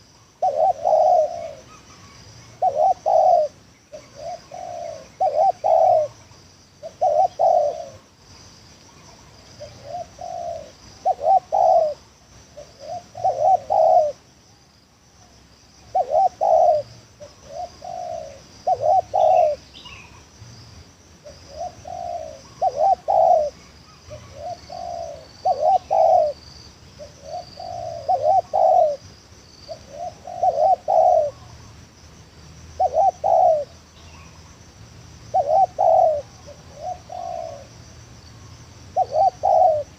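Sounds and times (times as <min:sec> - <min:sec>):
dove cooing: 0:00.0 - 0:06.2, 0:06.8 - 0:08.1, 0:08.9 - 0:14.2, 0:15.9 - 0:20.2, 0:21.2 - 0:26.4, 0:27.0 - 0:29.1, 0:29.7 - 0:31.7, 0:32.8 - 0:34.4, 0:35.3 - 0:37.8, 0:38.9 - 0:39.9.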